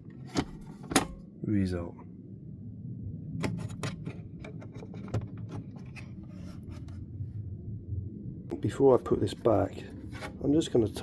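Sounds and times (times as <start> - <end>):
plastic parts clicking and scraping: 0.0 - 1.2, 3.4 - 7.0
steady low hum: 0.0 - 11.0.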